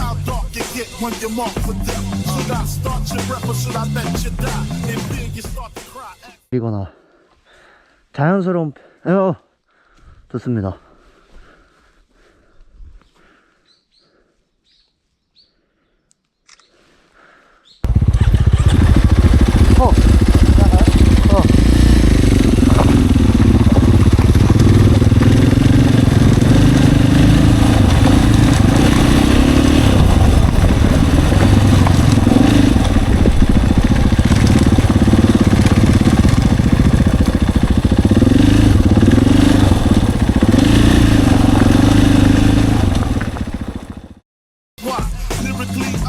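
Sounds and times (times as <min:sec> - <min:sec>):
motorcycle engine revving: 0:17.8 - 0:44.2.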